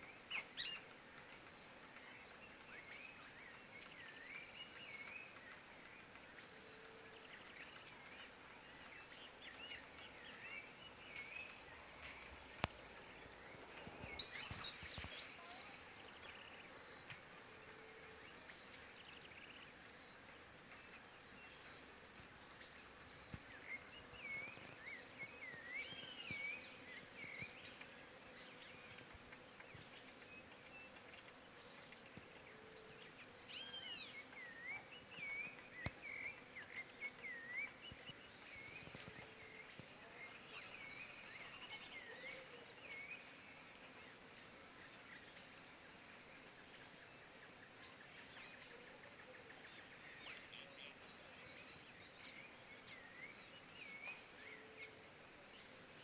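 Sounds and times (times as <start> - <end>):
high-pitched insect drone: 10.2 - 19.7.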